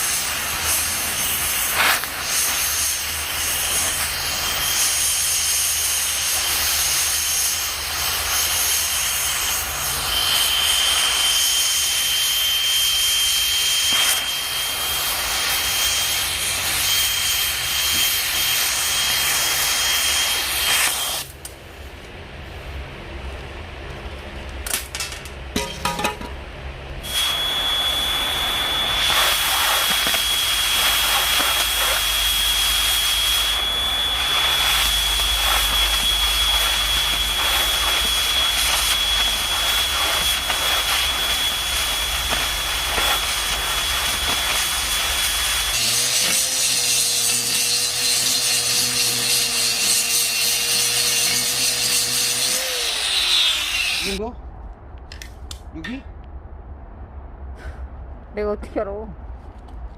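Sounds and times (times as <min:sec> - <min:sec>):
power tool grinding steel: 0:00.0 - 0:21.3, 0:27.1 - 0:54.2.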